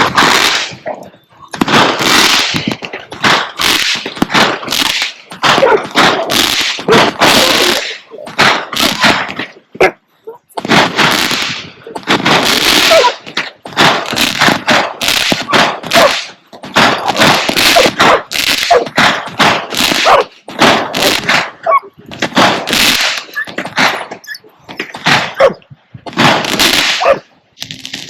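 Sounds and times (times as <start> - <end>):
fireworks bangs and crackles: 0.0 - 28.0
dog barking: 5.5 - 6.0, 17.7 - 19.0, 20.0 - 20.3, 25.3 - 25.6, 27.0 - 27.3.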